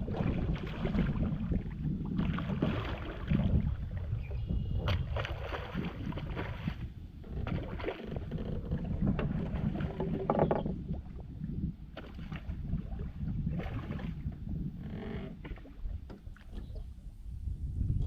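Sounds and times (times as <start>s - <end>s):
wind and water rumble: 0.0s - 18.0s
scuffs and splashes: 4.8s - 6.9s.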